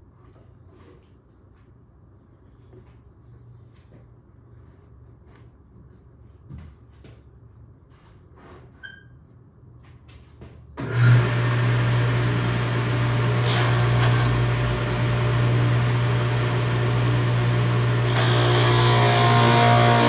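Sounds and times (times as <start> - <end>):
saw blade cutting plywood: 10.8 - 20.0
table saw running: 10.8 - 20.0.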